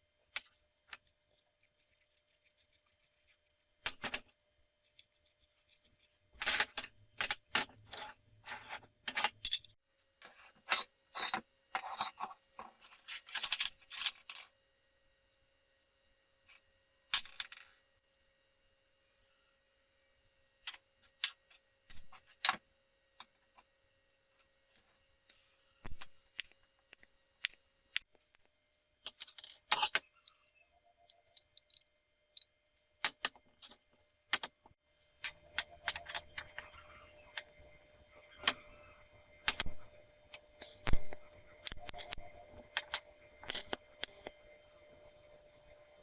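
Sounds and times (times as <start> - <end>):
faint hum: 14.3 - 46.0
steel tools clinking: 29.1 - 31.8.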